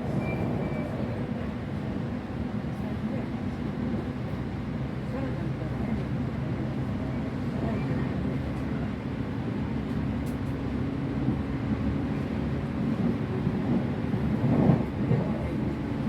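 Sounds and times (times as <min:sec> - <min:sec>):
train carriage running rumble: 0:00.0 - 0:16.0.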